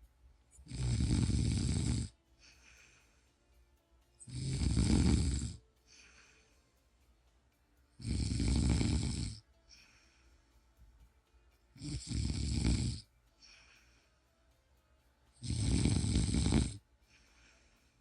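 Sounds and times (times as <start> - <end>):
person snoring: 0.6 - 3.2, 4.2 - 6.5, 8.0 - 10.2, 11.8 - 13.8, 15.4 - 17.7
faint breath: 2.1 - 4.2, 5.6 - 7.9, 9.4 - 11.7, 13.0 - 15.1, 16.8 - 18.0.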